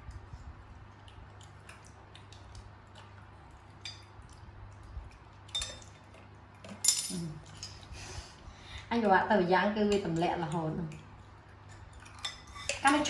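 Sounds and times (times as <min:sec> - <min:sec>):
utensils clinking against dishes: 0:06.6 - 0:07.9, 0:11.7 - 0:13.0.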